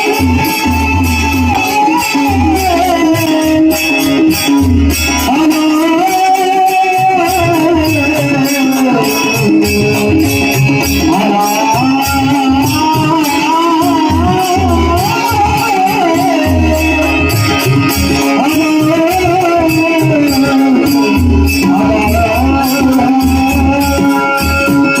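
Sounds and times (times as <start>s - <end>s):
person singing high wavering: 0.0s - 4.4s
jingling percussion: 0.0s - 25.0s.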